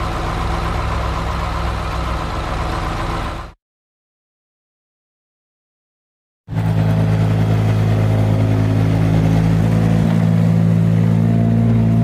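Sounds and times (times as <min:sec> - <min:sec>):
loud engine hum: 0:00.0 - 0:03.6, 0:06.5 - 0:12.0.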